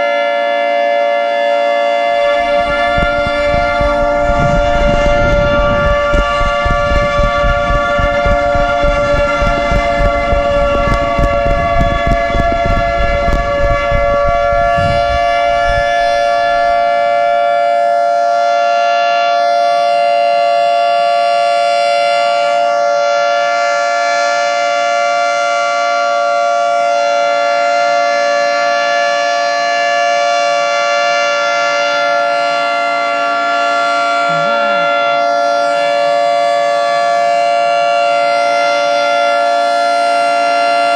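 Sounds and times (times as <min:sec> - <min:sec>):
warning siren steady chord: 0:00.0 - 0:40.9
low rumbling noise: 0:02.1 - 0:17.4, 0:34.2 - 0:37.1.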